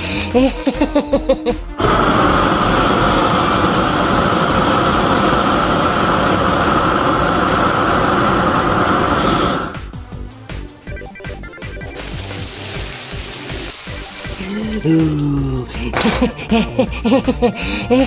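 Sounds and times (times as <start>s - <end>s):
motor humming: 1.8s - 10.0s.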